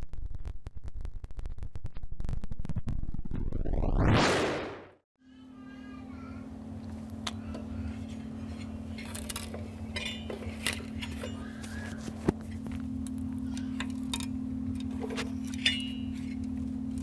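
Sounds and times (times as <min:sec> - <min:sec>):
electrical hum: 0:05.3 - 0:17.0.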